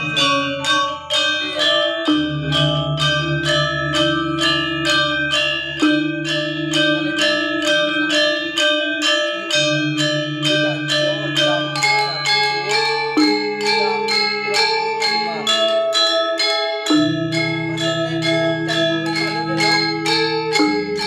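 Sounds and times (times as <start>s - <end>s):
low gong tones: 0.0s - 15.8s
metallophones struck: 0.0s - 21.0s.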